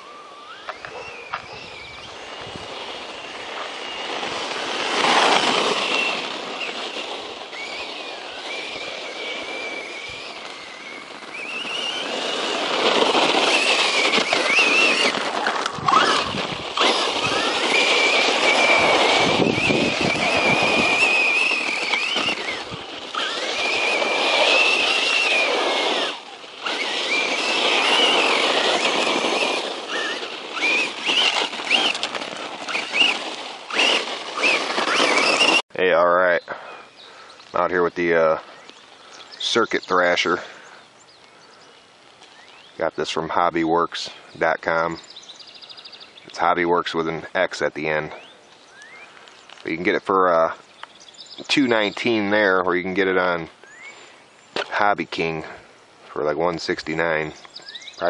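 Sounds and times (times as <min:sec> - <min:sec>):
electric motor whining: 0:00.0 - 0:35.6
tyres and drivetrain rattling: 0:00.6 - 0:35.6.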